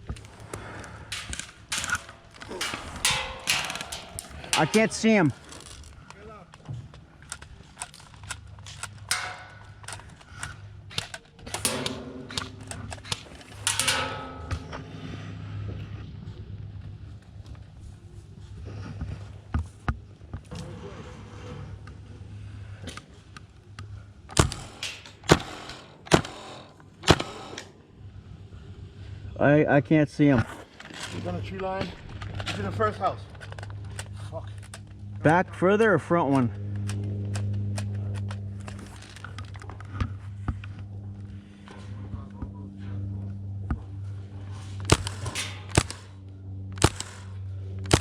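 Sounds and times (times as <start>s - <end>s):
airsoft guns firing: 0.6s - 5.5s, 8.8s - 10.4s, 11.4s - 14.7s, 24.3s - 27.6s, 44.8s - 48.0s.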